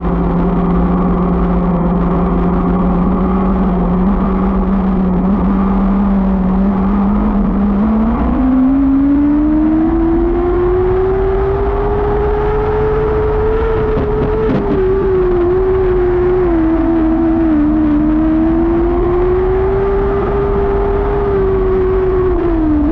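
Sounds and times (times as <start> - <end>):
race car engine revving: 0.0 - 22.9.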